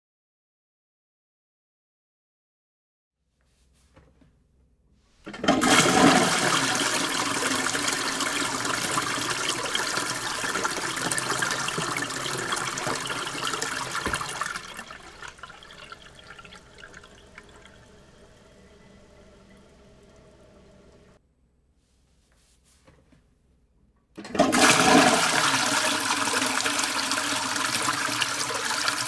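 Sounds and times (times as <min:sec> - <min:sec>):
toilet flushing: 0:05.2 - 0:21.2, 0:24.2 - 0:29.0.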